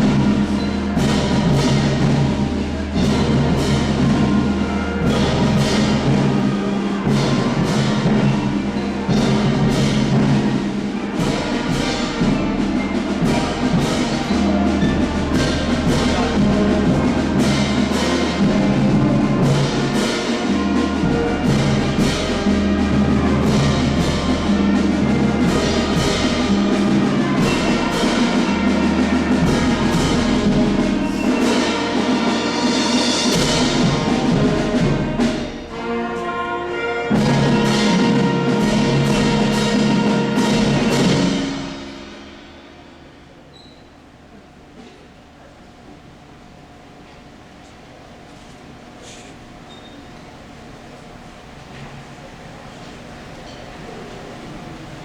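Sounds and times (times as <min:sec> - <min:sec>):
percussion beat: 0:00.0 - 0:43.6
instrumental orchestral music: 0:00.0 - 0:47.1.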